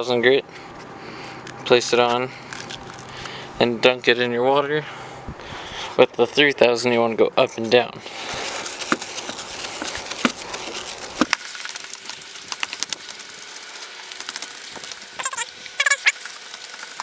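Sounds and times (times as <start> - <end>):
wet sandpaper rubbing on plastic: 8.0 - 11.3.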